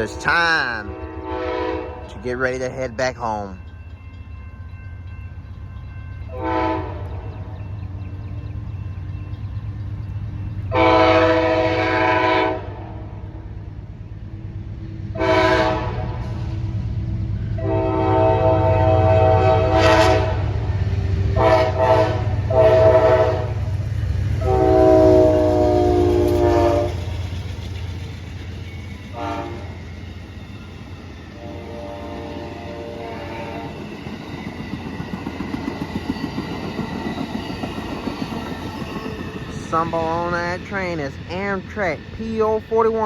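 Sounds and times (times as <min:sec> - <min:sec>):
locomotive horn blasts: 0:00.0 - 0:02.2, 0:06.3 - 0:07.3, 0:10.7 - 0:13.0, 0:15.1 - 0:16.5, 0:17.6 - 0:20.6, 0:21.4 - 0:23.7, 0:24.4 - 0:27.1, 0:29.1 - 0:29.8, 0:31.4 - 0:33.8
low rumble of train: 0:00.0 - 0:43.0.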